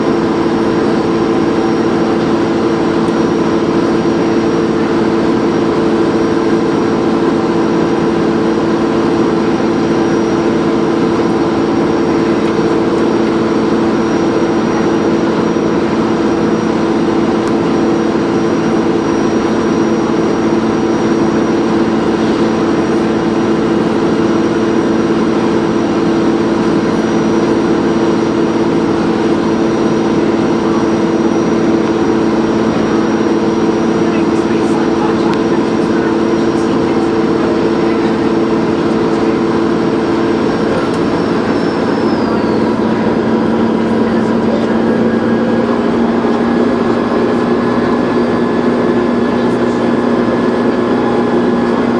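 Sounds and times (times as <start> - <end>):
bus engine running: 0.0 - 51.9
high turbo whistle: 7.9 - 48.9.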